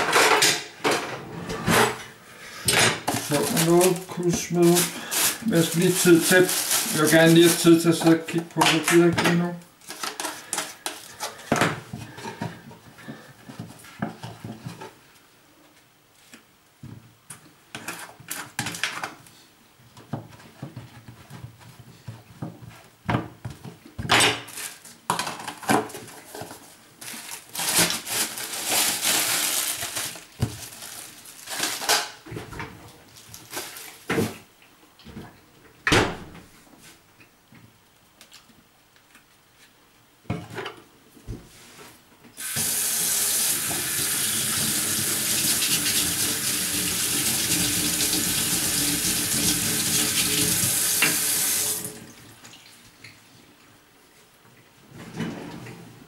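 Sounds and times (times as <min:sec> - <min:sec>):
water tap running: 0:42.4 - 0:52.2.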